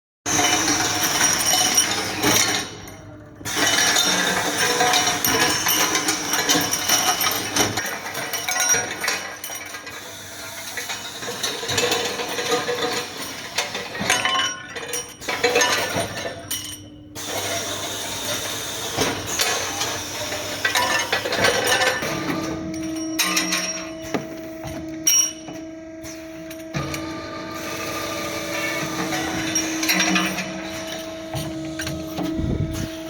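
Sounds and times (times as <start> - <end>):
metallic clinking of machine: 0.3 - 33.0.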